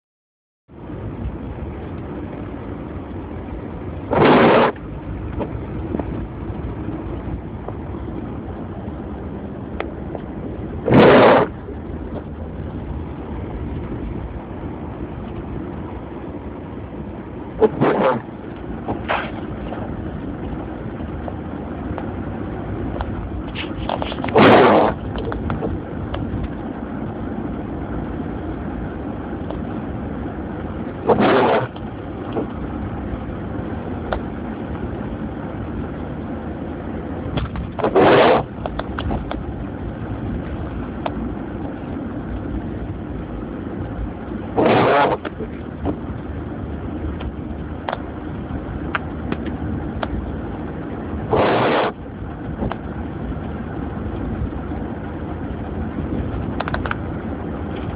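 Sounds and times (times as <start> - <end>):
car road and engine noise: 0.7 - 57.9
windshield wipers scraping: 4.1 - 7.0, 10.1 - 11.5, 17.6 - 20.7, 23.0 - 26.7, 31.0 - 32.7, 37.3 - 41.9, 43.6 - 46.2, 50.9 - 53.0.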